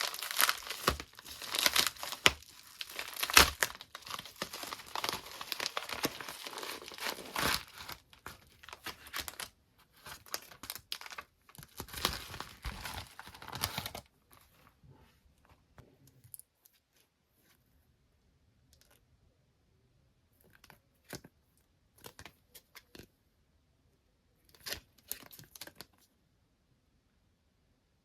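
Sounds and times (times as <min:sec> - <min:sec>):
packaging tearing: 0:00.0 - 0:09.5, 0:10.1 - 0:14.0
packaging crinkling: 0:00.0 - 0:14.0.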